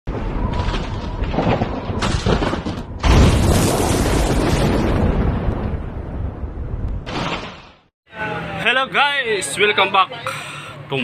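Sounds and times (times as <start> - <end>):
deep explosion-like boom: 0.1 - 7.9.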